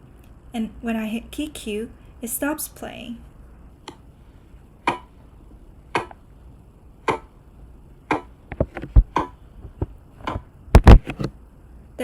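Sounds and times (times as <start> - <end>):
sharp clicks or knocks: 8.1 - 11.3.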